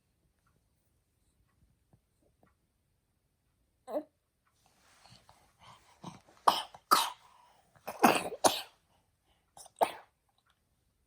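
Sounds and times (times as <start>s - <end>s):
person coughing harshly: 6.5s - 7.2s, 7.9s - 8.7s, 9.6s - 10.0s.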